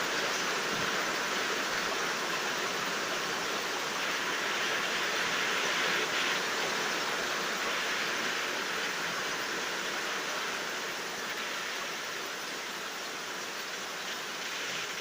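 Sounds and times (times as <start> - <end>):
steady rain falling: 0.0 - 15.0.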